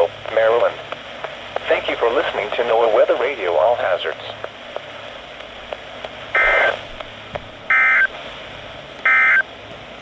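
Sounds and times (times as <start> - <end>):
radio static hiss: 0.0 - 9.5
warbling digital data tones: 6.3 - 6.9.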